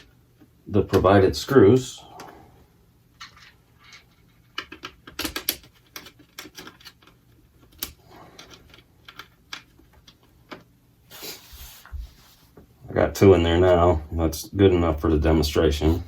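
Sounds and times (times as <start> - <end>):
small screws clicking and tapping: 3.2 - 10.6.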